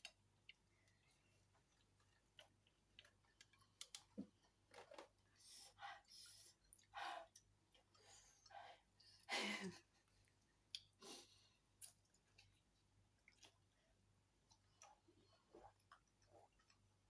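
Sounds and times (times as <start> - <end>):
chewing and wet mouth noises: 0.0 - 4.4, 10.2 - 11.0, 11.7 - 17.0
breathing: 7.9 - 9.3.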